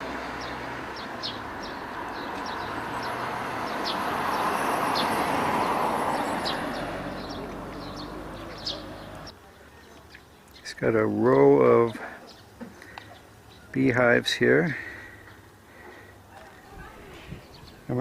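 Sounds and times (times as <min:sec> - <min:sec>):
vehicle passing by: 0:00.0 - 0:09.3
small birds chirping: 0:00.0 - 0:18.0.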